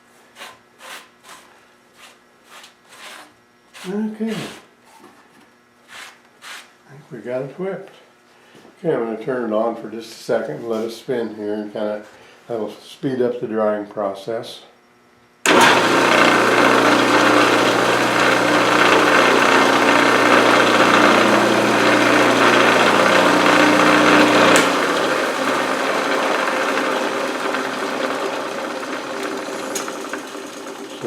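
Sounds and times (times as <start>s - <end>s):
drum sander motor hum: 15.4s - 31.0s
drum winding down whir: 15.5s - 31.0s.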